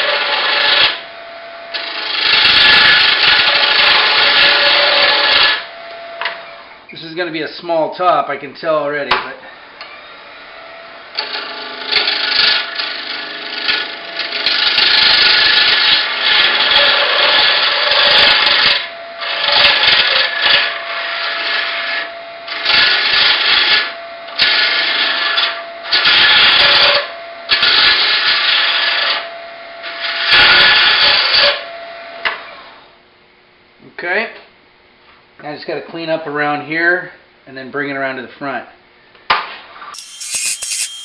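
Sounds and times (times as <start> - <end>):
lathe humming: 40.0 - 41.0
lathe tool scraping antler: 40.0 - 41.0.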